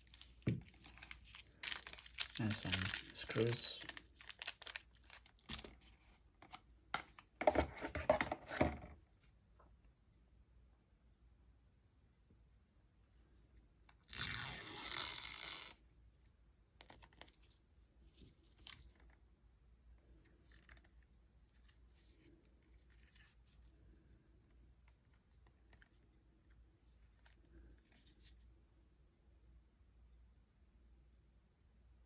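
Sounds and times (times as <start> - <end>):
packaging tearing crinkle: 0.0 - 5.6
packaging rustles: 0.0 - 5.9.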